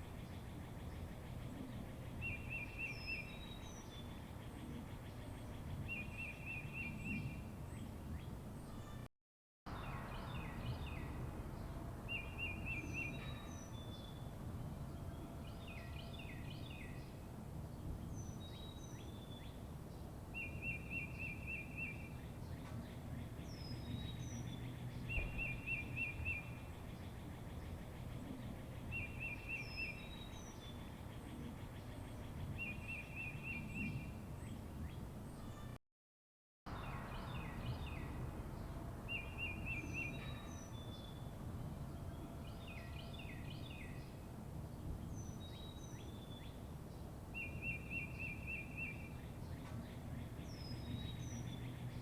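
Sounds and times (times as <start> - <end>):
songbirds chirping: 0.0 - 9.1, 9.7 - 35.8, 36.7 - 52.0
low outdoor rumble: 9.7 - 15.6, 36.7 - 42.6.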